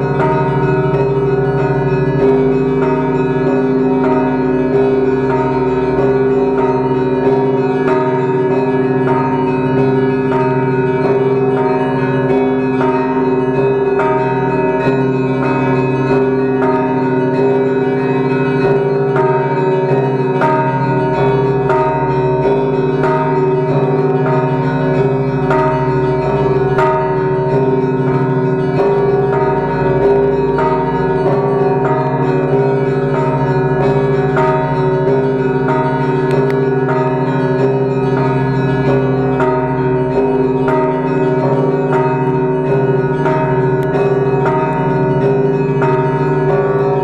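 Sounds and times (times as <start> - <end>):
church bells ringing: 0.0 - 47.0.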